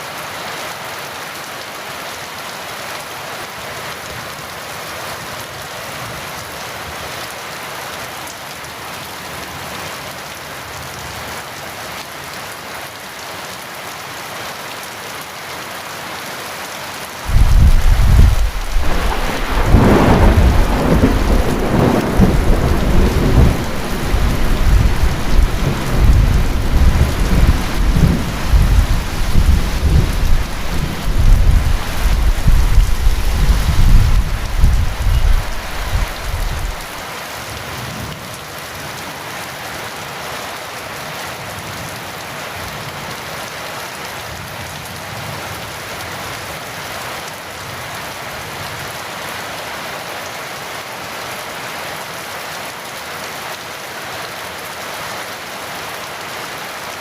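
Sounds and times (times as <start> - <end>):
heavy rain: 0.0 - 57.0
thunder rumbling: 17.3 - 37.0.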